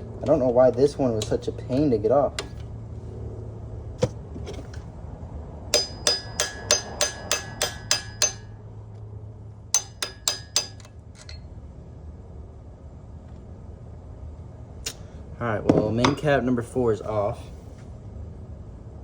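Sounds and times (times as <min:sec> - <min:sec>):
metal-on-metal taps: 0:05.8 - 0:08.5, 0:09.8 - 0:11.4.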